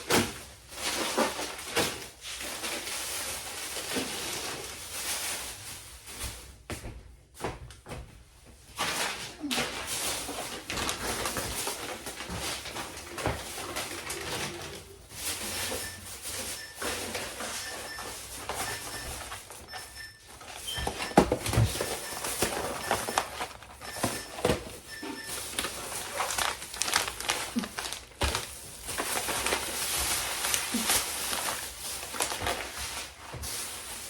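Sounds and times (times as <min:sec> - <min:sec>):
packages knocking and clunking: 0:00.0 - 0:05.2, 0:06.0 - 0:34.0
plastic bags rustling: 0:00.0 - 0:06.7, 0:08.6 - 0:34.0
faint high beep: 0:15.6 - 0:23.2, 0:23.8 - 0:25.5.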